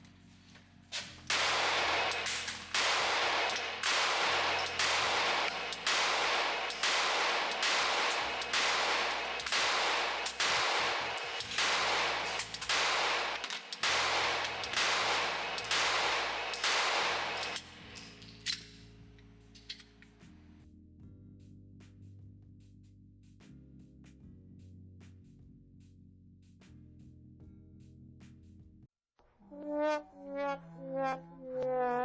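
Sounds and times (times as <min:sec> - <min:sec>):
pistol shots with ringing tail: 0:01.2 - 0:18.8.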